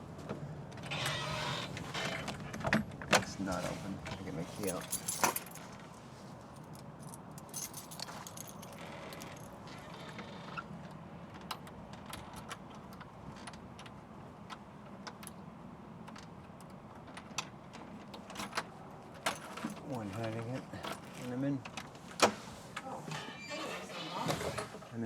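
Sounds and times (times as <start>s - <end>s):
keys jangling: 4.6s - 5.8s, 6.5s - 9.6s.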